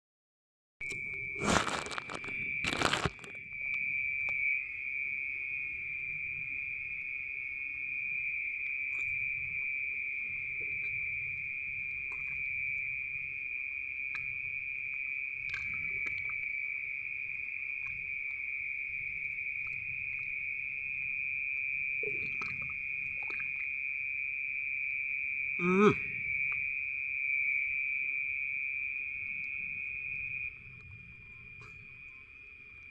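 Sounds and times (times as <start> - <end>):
insect trilling: 0.8 - 6.0, 14.9 - 32.5.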